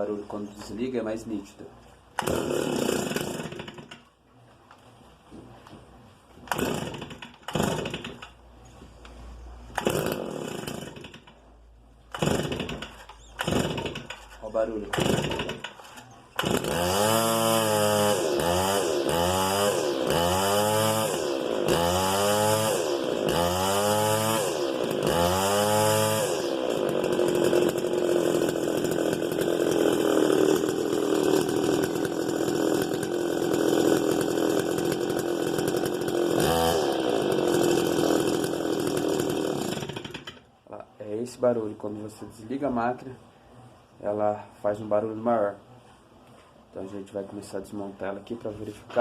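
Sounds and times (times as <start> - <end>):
brushcutter engine revving and idling: 2.2 - 4.0, 6.5 - 8.3, 9.7 - 11.3, 12.1 - 14.3, 14.9 - 40.4.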